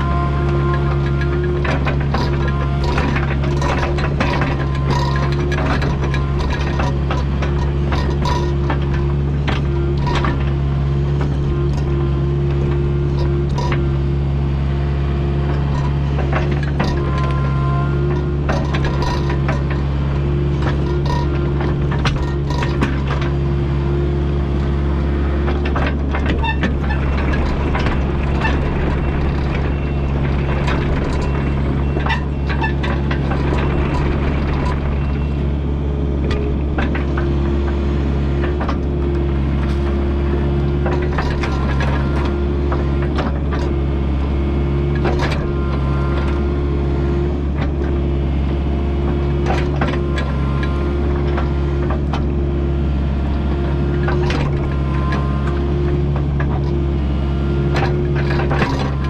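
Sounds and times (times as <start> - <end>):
excavator diesel engine running: 0.0 - 59.0.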